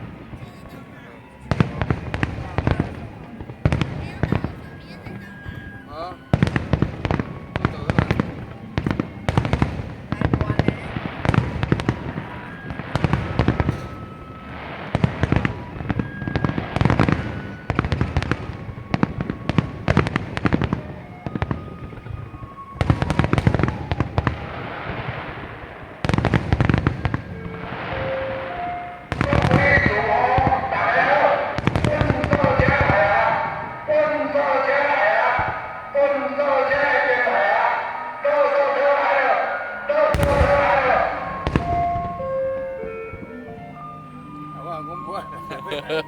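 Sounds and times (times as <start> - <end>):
fireworks crackling: 0.0 - 43.9
fireworks shells bursting: 40.0 - 42.4.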